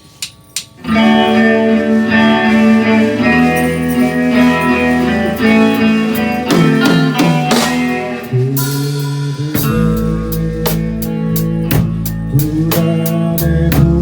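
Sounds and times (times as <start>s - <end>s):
rock band guitars: 0.7s - 14.0s.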